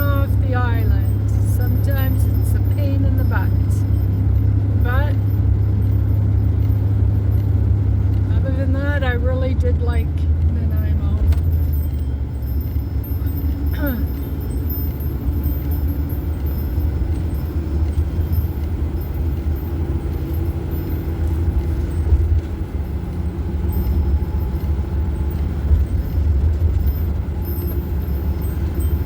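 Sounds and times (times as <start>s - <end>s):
engine rumble in vehicle cabin: 0.0s - 29.0s.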